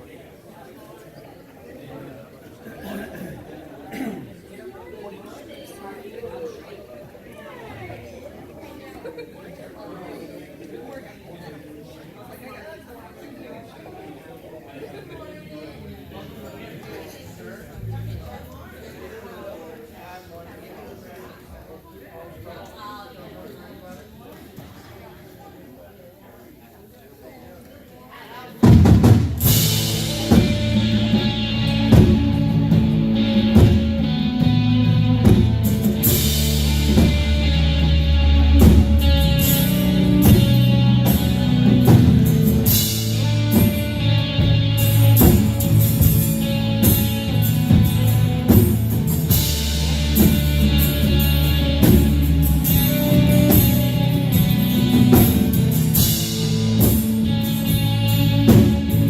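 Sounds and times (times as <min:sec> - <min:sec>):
live band playing: 0:28.6 - 0:59.0
steady drum beat: 0:28.6 - 0:59.0.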